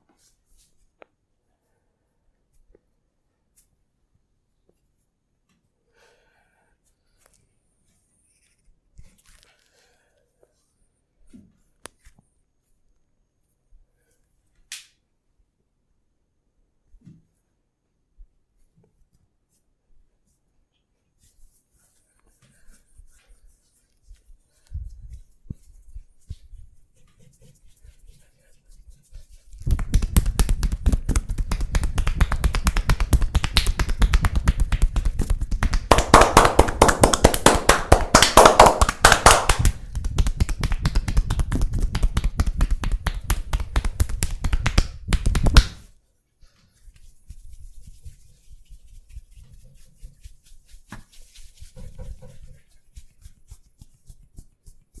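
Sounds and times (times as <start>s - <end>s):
hands tapping and slapping on body: 29.6s - 45.8s.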